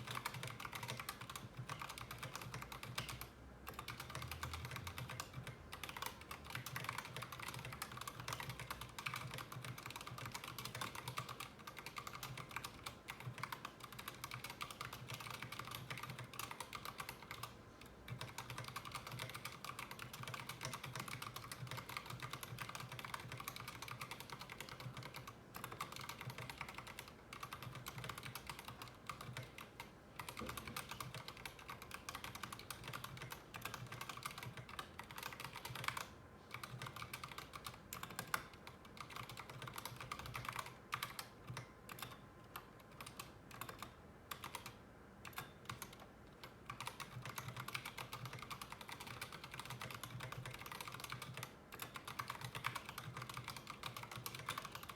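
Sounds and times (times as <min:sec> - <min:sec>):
mechanical keyboard key clacks: 0:18.1 - 0:54.9.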